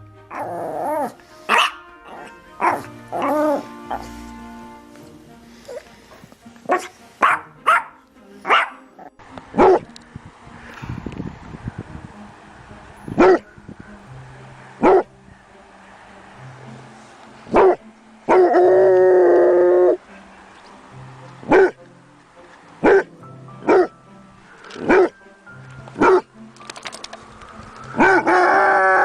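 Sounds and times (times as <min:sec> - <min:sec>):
soft background music: 0:00.0 - 0:29.0
dog long held cry: 0:00.3 - 0:04.2, 0:17.5 - 0:20.0, 0:28.0 - 0:29.0
dog barking: 0:01.5 - 0:04.1, 0:06.7 - 0:08.9, 0:09.6 - 0:09.9, 0:13.1 - 0:13.5, 0:14.8 - 0:15.2, 0:17.5 - 0:18.8, 0:21.5 - 0:21.8, 0:22.8 - 0:23.9, 0:24.8 - 0:25.2, 0:26.0 - 0:26.3, 0:28.0 - 0:28.6.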